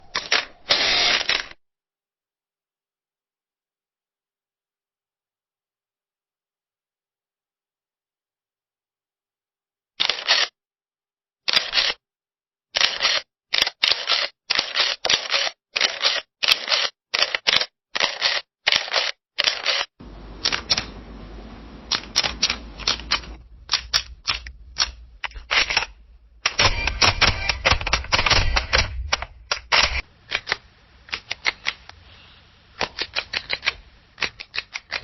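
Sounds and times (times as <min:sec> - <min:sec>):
camera shutter clicking: 0:00.1 - 0:01.5, 0:10.0 - 0:10.5, 0:12.8 - 0:20.9, 0:21.9 - 0:31.8
low hiss: 0:20.0 - 0:25.3, 0:30.0 - 0:34.2.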